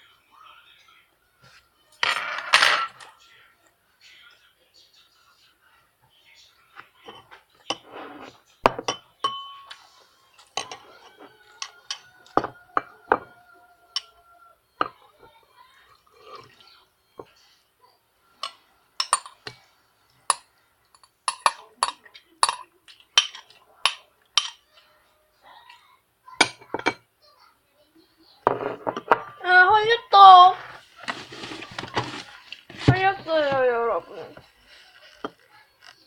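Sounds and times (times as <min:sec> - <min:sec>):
chopsticks clinking against bowls: 0:08.8 - 0:14.2, 0:18.4 - 0:19.6, 0:20.3 - 0:24.9.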